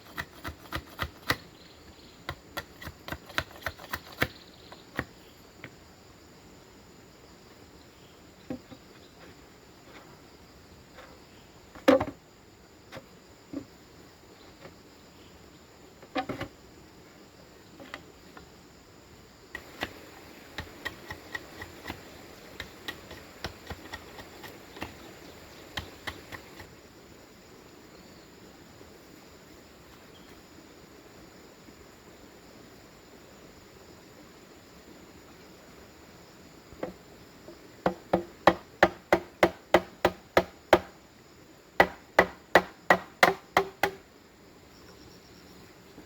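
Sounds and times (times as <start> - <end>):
knocks and clicks on bamboo: 0.0 - 1.5, 2.3 - 5.7, 19.6 - 25.1, 25.7 - 26.7, 37.8 - 41.0, 41.8 - 44.0
sharp taps on bamboo: 0.1 - 1.5, 2.3 - 5.1, 19.6 - 25.0, 25.7 - 26.7, 37.8 - 41.0, 41.8 - 44.0
faint hiss: 3.6 - 46.0.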